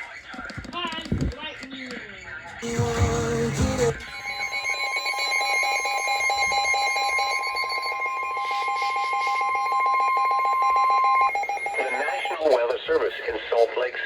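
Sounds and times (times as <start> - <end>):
high-pitched alarm tone: 2.6 - 12.6.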